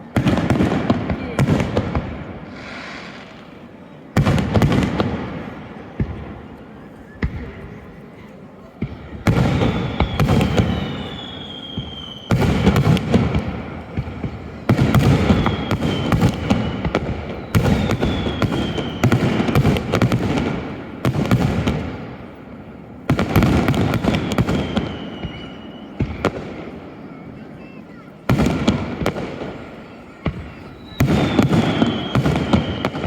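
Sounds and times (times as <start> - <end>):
fireworks bangs with crackle: 0.0 - 33.0
faint high falling whistle: 9.6 - 12.4, 24.6 - 26.0.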